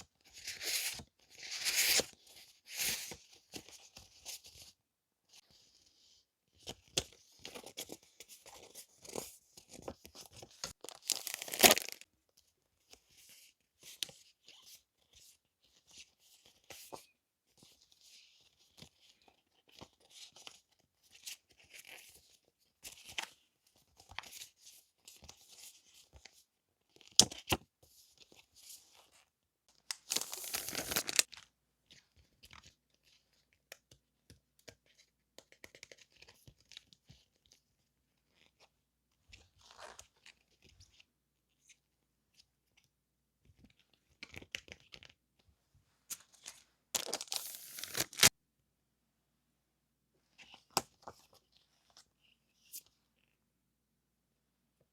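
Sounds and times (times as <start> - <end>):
paper rustling and crinkling: 30.0 - 31.4, 46.1 - 48.3
paper ripping: 47.0 - 48.3.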